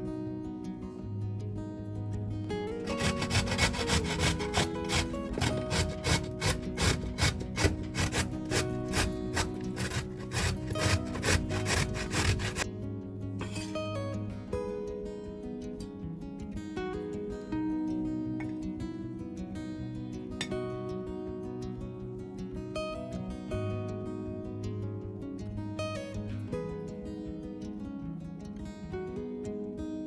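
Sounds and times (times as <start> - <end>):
soft acoustic guitar music: 0.0 - 30.0
food scraping strokes: 2.9 - 12.7.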